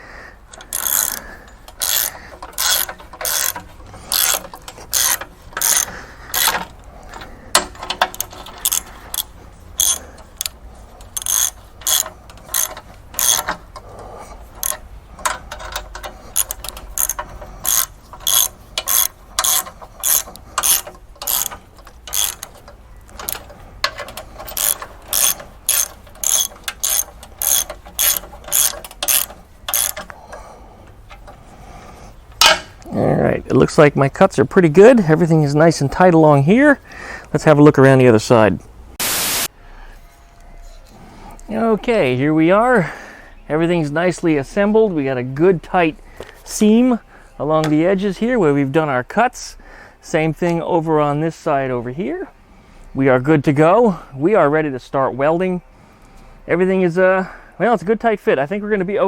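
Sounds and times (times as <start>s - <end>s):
ratchet wrench clicking: 0.5s - 6.9s, 7.5s - 13.9s, 14.5s - 30.2s.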